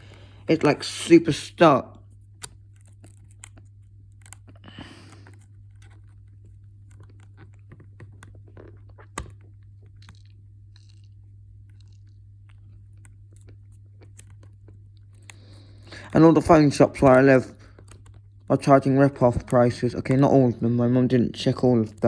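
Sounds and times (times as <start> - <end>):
steady low hum: 0.0 - 22.0
paperclip clicking and scratching: 2.2 - 8.3.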